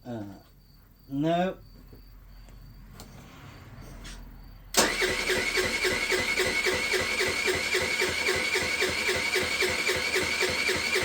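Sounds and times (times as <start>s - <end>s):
electric starter cranking engine: 4.7s - 11.0s.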